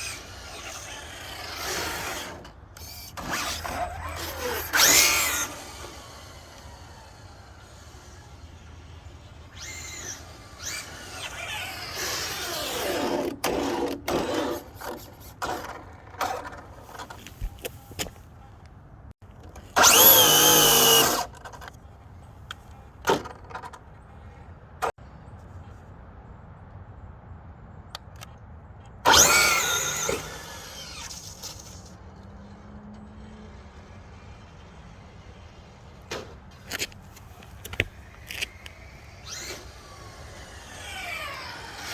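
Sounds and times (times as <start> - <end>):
rc car electric motor whining: 0.0 - 16.6, 19.8 - 21.4, 29.1 - 32.0, 37.4 - 41.9.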